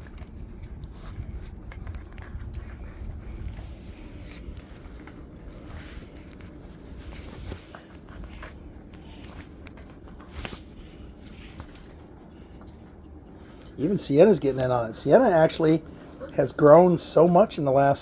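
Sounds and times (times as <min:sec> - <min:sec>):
paws scratching: 0:00.0 - 0:17.9
puppies scuffling: 0:00.0 - 0:18.0.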